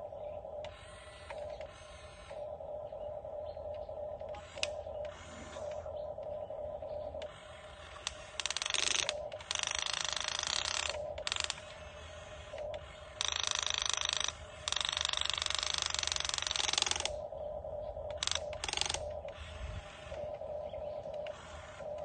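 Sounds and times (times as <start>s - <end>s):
steady hum: 0.0s - 22.0s
geared mechanism grinding and whirring: 7.4s - 17.2s.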